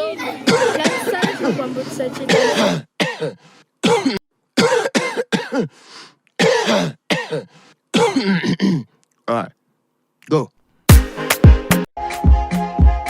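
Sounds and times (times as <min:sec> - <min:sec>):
person coughing: 0:00.5 - 0:01.7, 0:02.3 - 0:05.8, 0:06.4 - 0:08.9.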